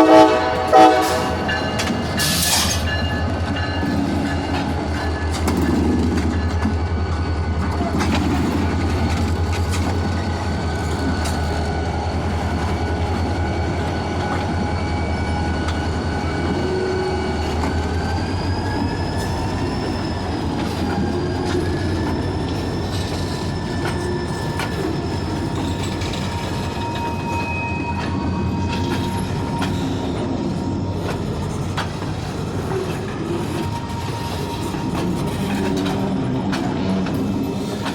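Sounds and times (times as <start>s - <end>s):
train cars rumbling: 0.0s - 37.9s
wheels clicking over rail joints: 0.4s - 37.9s
high-pitched wheel squeal: 9.2s - 36.3s.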